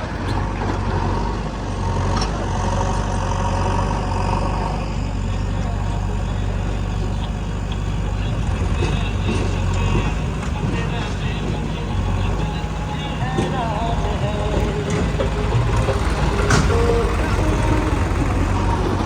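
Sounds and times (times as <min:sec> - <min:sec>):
heavy diesel engine running: 0:00.0 - 0:19.0.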